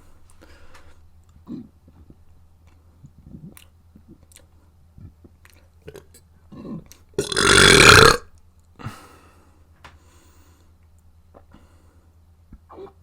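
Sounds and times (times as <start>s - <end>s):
person burping: 7.2s - 8.2s.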